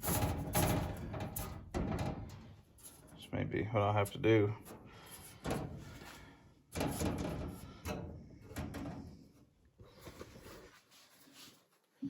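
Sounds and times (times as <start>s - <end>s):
metal rattling: 0.0s - 3.2s, 6.7s - 9.2s
sheet metal scraping and clunking: 0.0s - 3.2s, 4.6s - 9.4s.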